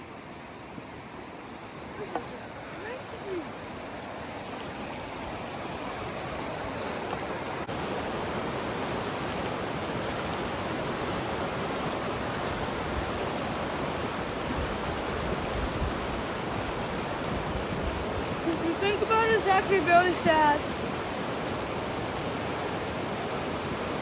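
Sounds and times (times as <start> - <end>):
creek rushing: 0.0 - 24.0.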